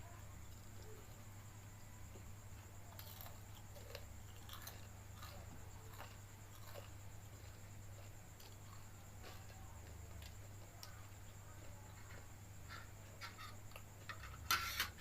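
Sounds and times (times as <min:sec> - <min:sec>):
faint chewing: 0:00.4 - 0:14.4.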